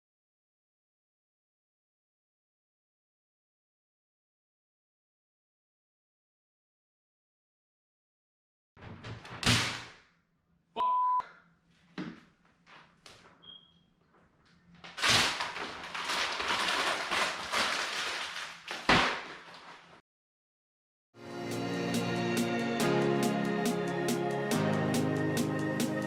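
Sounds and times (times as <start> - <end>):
short steady beep: 10.8 - 11.2.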